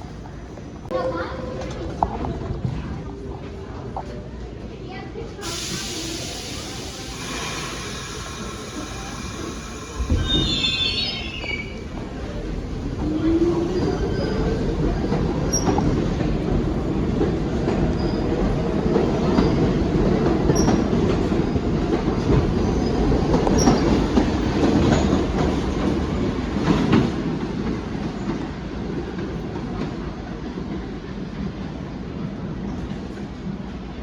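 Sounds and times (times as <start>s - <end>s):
subway train rumble: 0.0s - 34.0s
faint wheel squeals: 8.6s - 11.9s.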